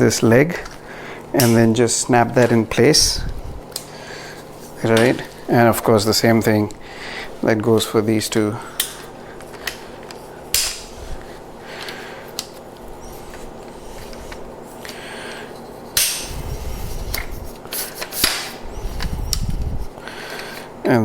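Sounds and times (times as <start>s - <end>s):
tripod legs scraping: 15.6s - 19.9s.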